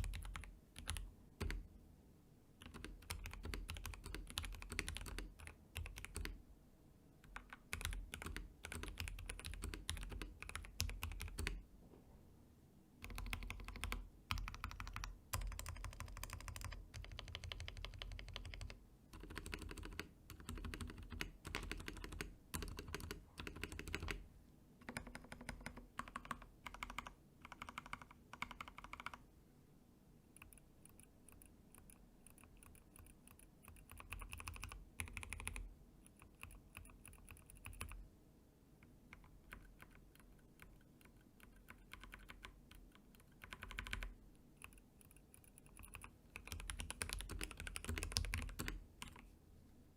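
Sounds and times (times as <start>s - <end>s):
mechanical keyboard typing: 0.0s - 1.6s, 2.6s - 6.4s, 7.2s - 11.6s, 13.0s - 24.2s, 24.8s - 29.2s, 30.4s - 38.0s, 39.1s - 49.3s.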